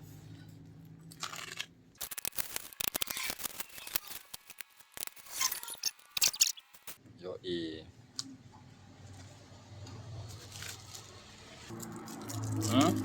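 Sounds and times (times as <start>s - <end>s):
packaging rustle: 10.3s - 13.0s.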